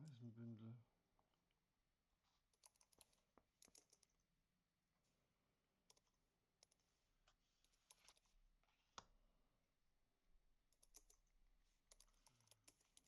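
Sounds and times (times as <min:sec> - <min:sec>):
trading cards being handled: 0:07.3 - 0:09.0.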